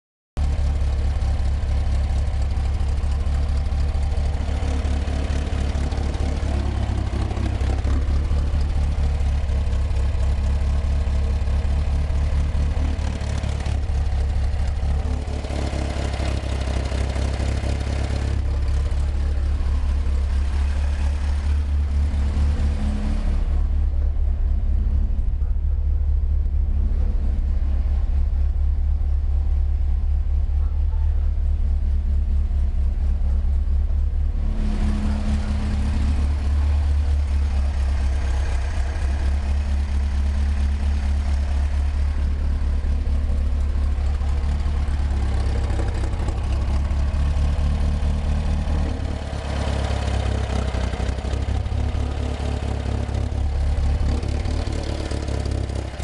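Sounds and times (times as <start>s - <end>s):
engine running: 0.4s - 56.0s
rapid engine tapping: 0.4s - 56.0s.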